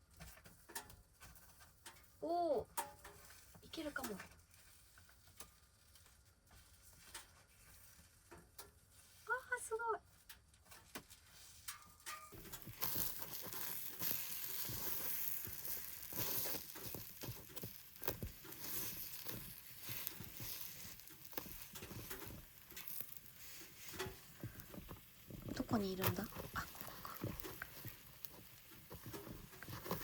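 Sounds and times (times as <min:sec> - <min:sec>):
utensil clicks and scrapes: 0:10.7 - 0:30.0
batter sizzling in a pan: 0:11.3 - 0:30.0.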